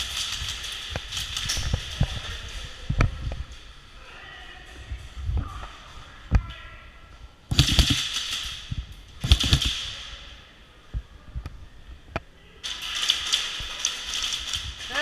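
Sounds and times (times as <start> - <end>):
airsoft guns firing: 7.5 - 10.3.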